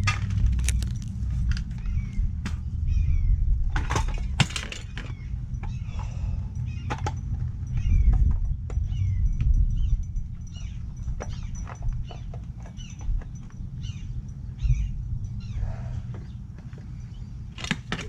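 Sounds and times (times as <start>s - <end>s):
plastic and metal parts clattering: 0.0s - 1.8s, 3.8s - 6.2s, 17.5s - 18.0s
steady low rumble: 0.0s - 17.6s.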